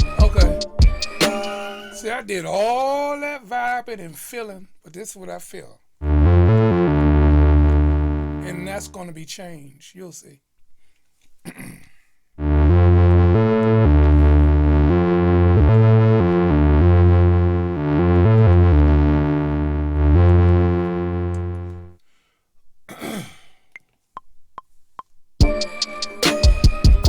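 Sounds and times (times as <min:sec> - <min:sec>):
synthesizer chords: 0:00.0 - 0:02.1, 0:06.0 - 0:09.0, 0:12.4 - 0:22.0, 0:25.4 - 0:27.0
heavy low bass: 0:12.4 - 0:21.8.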